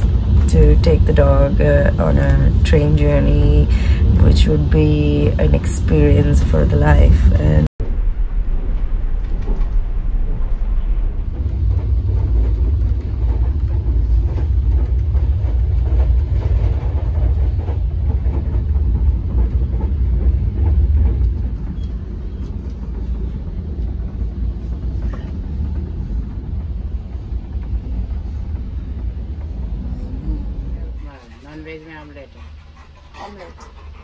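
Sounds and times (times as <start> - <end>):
train rumble inside carriage: 0.0 - 7.7, 9.2 - 34.0.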